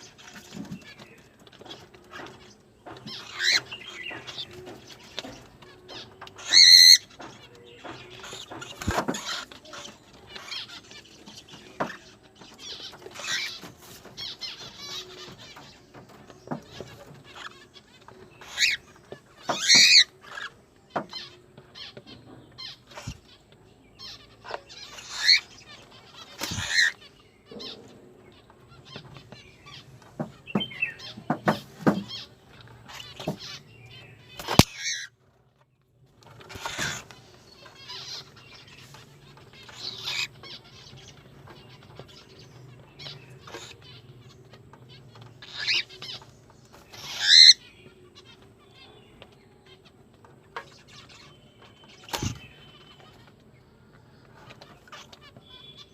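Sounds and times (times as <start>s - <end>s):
cockatiel chirping and screeching: 1.6s - 5.3s, 5.9s - 7.3s, 8.2s - 11.0s, 11.8s - 15.7s, 16.6s - 22.0s, 24.0s - 27.8s, 34.4s - 35.1s, 36.4s - 41.0s, 43.0s - 44.1s, 45.4s - 46.2s, 46.8s - 48.9s.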